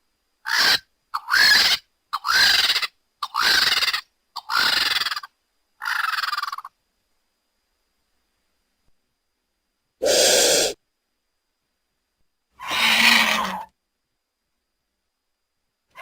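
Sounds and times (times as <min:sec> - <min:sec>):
vulture hissing calls: 0:00.4 - 0:06.7, 0:10.0 - 0:10.8, 0:12.6 - 0:13.7.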